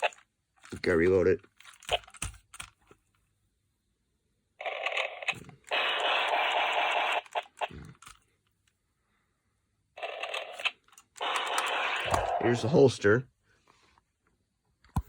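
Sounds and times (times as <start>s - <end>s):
toy speaker static burst: 4.6s - 7.8s, 10.0s - 12.8s.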